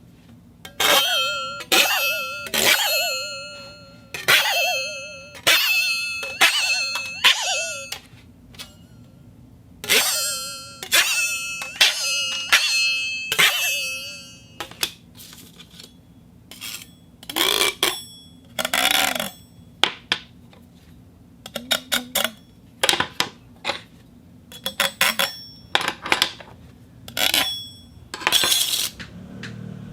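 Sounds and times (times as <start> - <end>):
metal plates clattering: 0.7 - 9.0, 9.8 - 15.9, 27.2 - 29.0.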